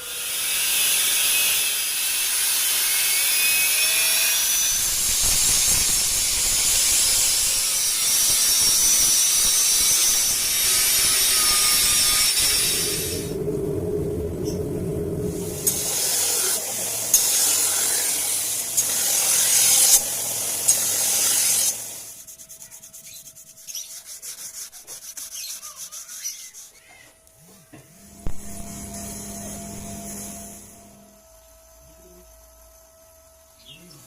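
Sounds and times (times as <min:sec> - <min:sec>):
low steady hum: 0:12.7 - 0:17.2, 0:27.2 - 0:34.0
knife blade being sanded: 0:15.8 - 0:26.9.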